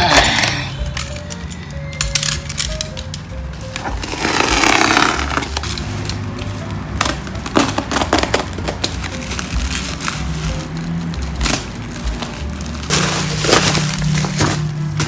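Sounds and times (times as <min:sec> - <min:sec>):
cardboard scraping slide: 0:03.8 - 0:06.2.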